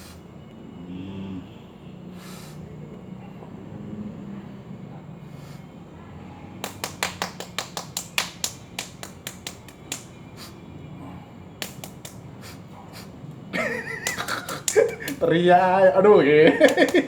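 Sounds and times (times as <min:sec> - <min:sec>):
sharp slaps: 0:06.6 - 0:10.5, 0:11.6 - 0:12.6, 0:13.8 - 0:15.4, 0:16.5 - 0:17.0.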